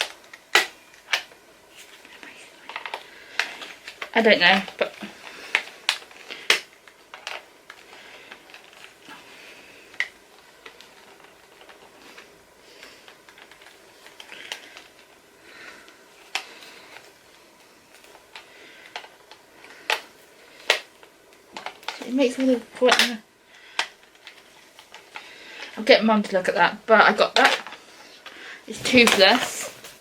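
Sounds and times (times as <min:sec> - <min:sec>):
soft handling rustles: 0:27.5 - 0:30.0.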